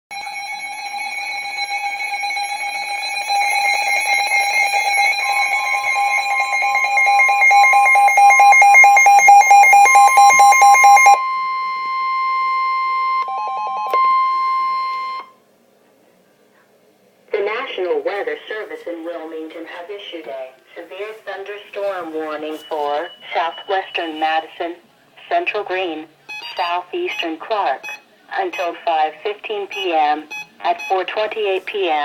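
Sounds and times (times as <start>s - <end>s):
steady high alert tone: 0.1s - 11.7s
fast-pulsing electronic alarm beeps: 0.2s - 11.2s.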